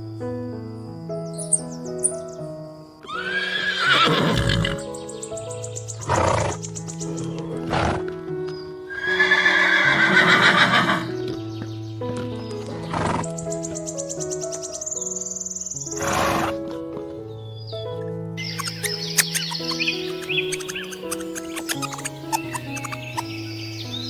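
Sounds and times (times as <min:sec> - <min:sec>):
background music: 0:00.0 - 0:24.0
horse whinnying: 0:03.0 - 0:04.9, 0:06.0 - 0:08.2, 0:08.9 - 0:11.4, 0:12.2 - 0:13.6, 0:15.9 - 0:16.8.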